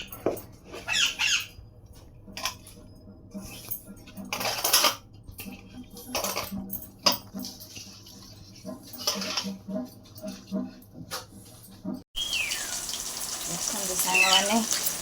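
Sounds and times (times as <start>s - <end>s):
metal utensils clinking and scraping: 2.2s - 11.7s, 13.5s - 15.0s.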